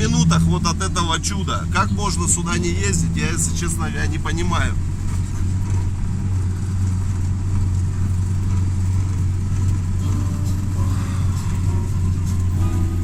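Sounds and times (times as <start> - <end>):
car engine and road noise: 0.0 - 13.0
faint car stereo music: 0.0 - 13.0.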